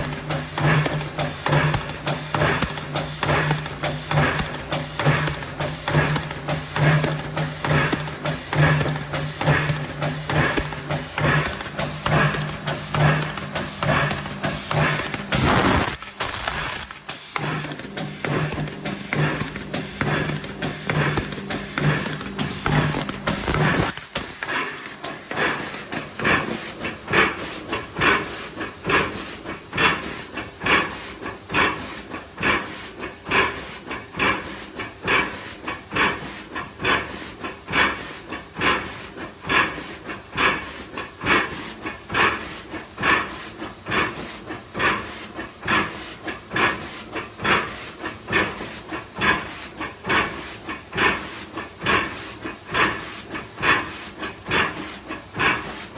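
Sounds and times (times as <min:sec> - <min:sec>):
mechanical clacks: 0:00.0 - 0:24.2.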